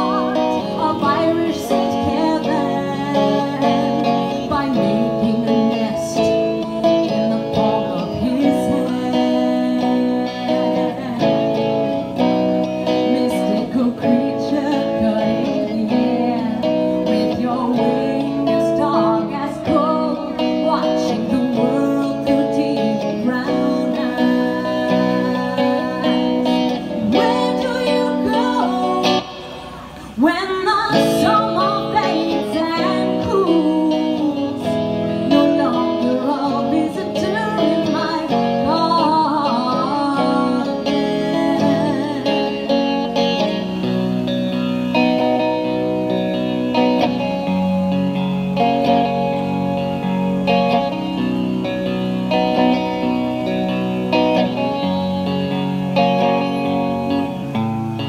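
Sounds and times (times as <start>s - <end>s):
woman singing: 0.0s - 43.7s
acoustic guitar: 0.0s - 58.0s.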